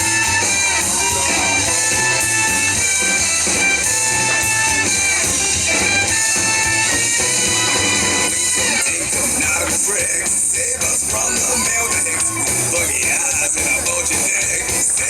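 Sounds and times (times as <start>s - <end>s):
instrumental music with beat: 0.0s - 15.0s.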